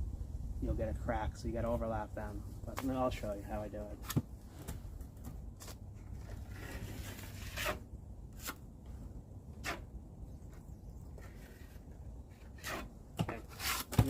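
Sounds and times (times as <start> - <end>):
taping knife scraping compound: 5.6 - 8.6, 9.6 - 9.9, 11.2 - 14.0.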